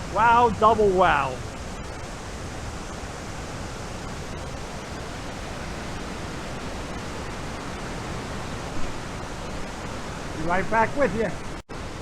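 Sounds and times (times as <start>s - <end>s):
waterfall roaring: 2.0s - 11.6s.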